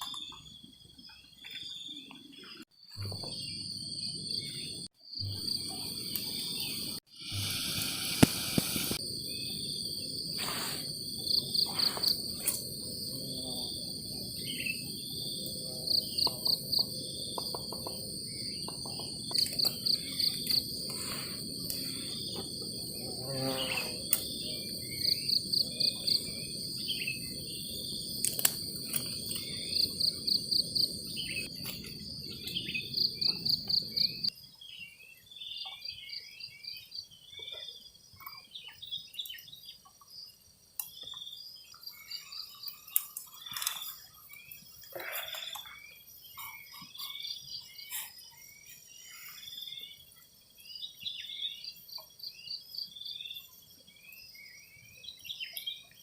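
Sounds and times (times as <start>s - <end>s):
insect chorus trilling: 2.4s - 56.0s
pulsed insect chirps: 3.0s - 34.3s.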